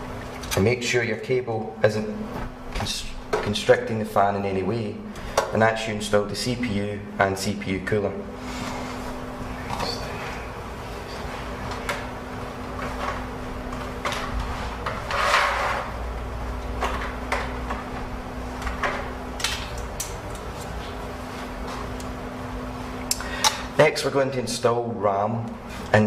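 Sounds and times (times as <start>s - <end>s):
low electrical hum: 0.0s - 26.0s
rustling scrape: 14.4s - 16.0s.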